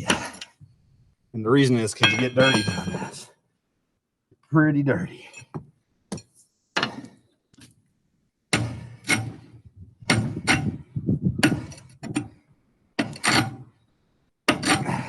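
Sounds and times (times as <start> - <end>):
wrench clanking on lug nuts: 2.0 - 3.1.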